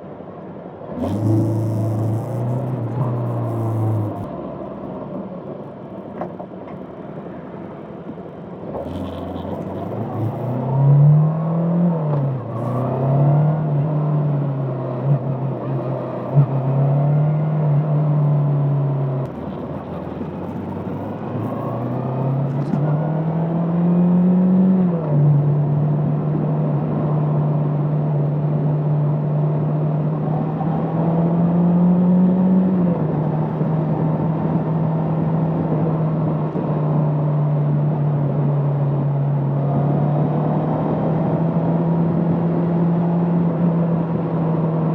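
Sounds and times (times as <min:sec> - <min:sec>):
motorcycle engine riding: 0:01.0 - 0:04.4, 0:08.8 - 0:10.8, 0:12.4 - 0:13.0, 0:19.3 - 0:23.2.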